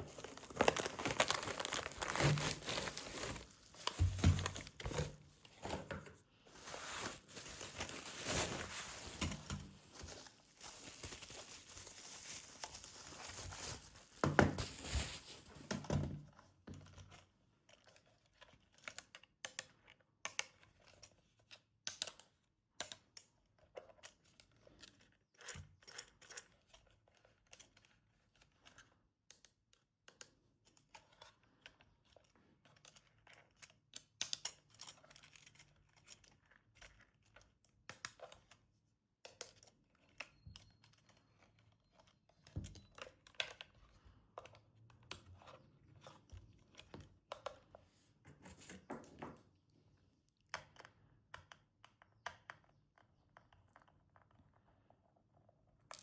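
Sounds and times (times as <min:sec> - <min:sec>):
packaging torn and crinkled: 0:00.0 - 0:05.3, 0:06.5 - 0:15.6.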